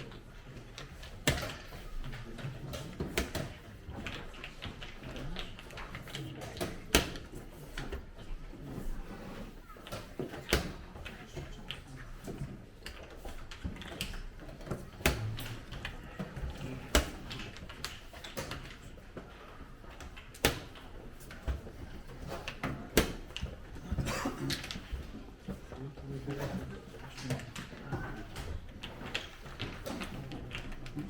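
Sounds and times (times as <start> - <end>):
low room murmur: 0.0 - 31.0
draughts pieces clicking on board: 9.4 - 23.7.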